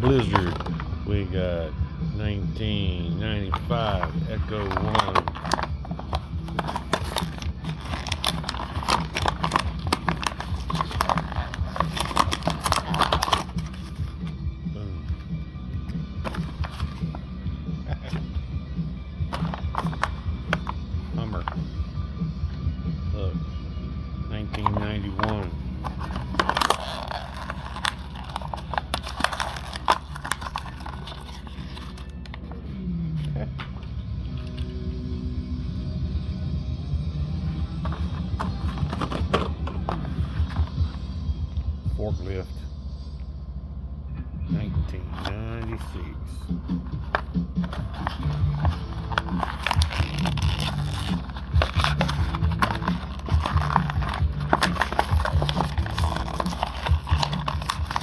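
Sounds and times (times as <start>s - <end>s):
plastic blister pack cracking: 0.0s - 0.9s, 3.5s - 14.2s, 19.3s - 21.6s, 24.6s - 32.4s, 46.8s - 58.0s.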